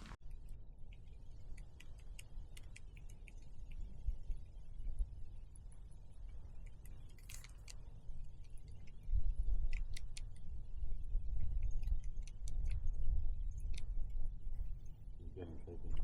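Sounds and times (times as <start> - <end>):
light metallic clicks and jingles: 6.2 - 8.7
low rumble on microphone: 9.0 - 16.0.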